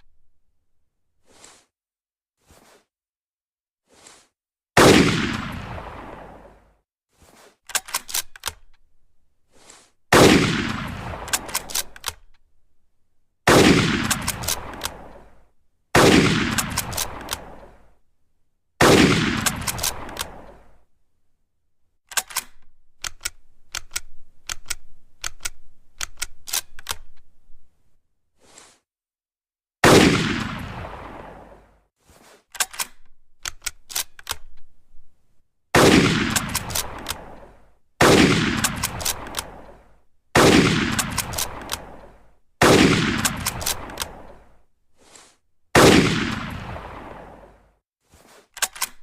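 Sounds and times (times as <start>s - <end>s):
rifle shots echoing: 4.8s - 6.5s, 10.1s - 11.9s, 13.5s - 15.3s, 16.0s - 17.8s, 18.8s - 20.7s, 29.8s - 31.6s, 35.8s - 44.5s, 45.8s - 47.6s
rifle bolt clicking: 7.7s - 8.9s, 11.3s - 12.5s, 14.0s - 15.2s, 16.5s - 17.5s, 19.4s - 20.6s, 22.1s - 27.4s, 32.5s - 34.8s, 35.8s - 37.5s, 38.4s - 39.8s, 40.7s - 44.4s, 48.6s - 49.0s.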